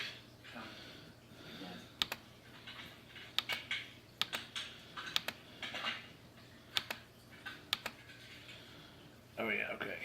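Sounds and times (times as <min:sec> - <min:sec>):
computer keyboard typing: 0:02.0 - 0:02.2, 0:03.4 - 0:05.4, 0:06.7 - 0:07.0, 0:07.7 - 0:08.0.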